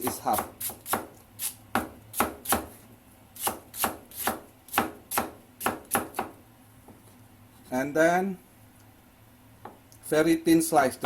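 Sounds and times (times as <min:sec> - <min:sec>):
knife slicing onion on cutting board: 0:00.0 - 0:02.8, 0:03.4 - 0:06.4.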